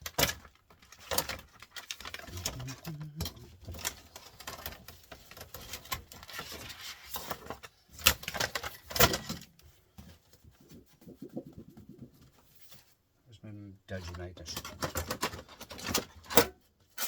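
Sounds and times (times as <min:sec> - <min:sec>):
small parts clattering: 0:00.0 - 0:09.5, 0:14.1 - 0:17.0.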